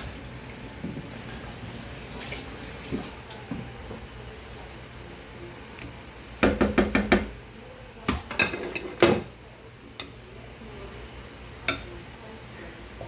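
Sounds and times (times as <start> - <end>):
kitchen utensils and dishes clattering: 8.1 - 9.3.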